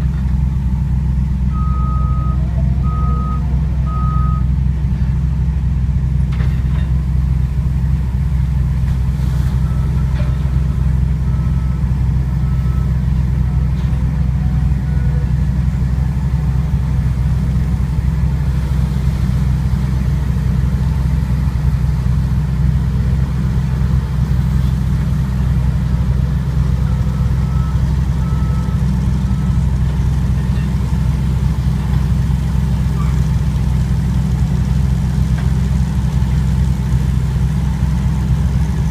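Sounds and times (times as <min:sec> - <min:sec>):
heavy diesel engine running: 0:00.0 - 0:38.9
backup alarm beeping: 0:01.5 - 0:04.5.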